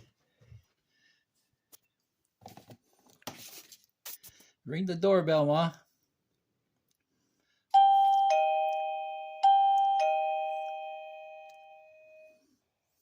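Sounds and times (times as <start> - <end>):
two-tone doorbell chime: 7.7 - 12.6.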